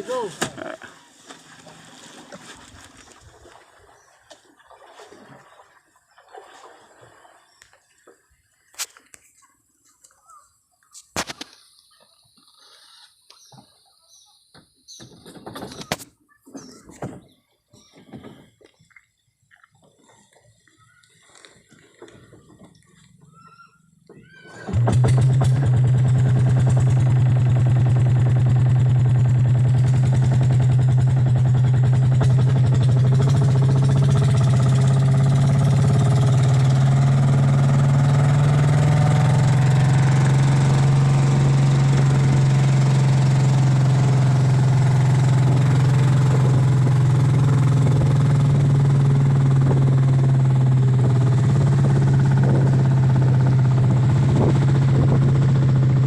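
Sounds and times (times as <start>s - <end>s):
boat engine running: 0.0s - 7.6s, 21.6s - 56.0s.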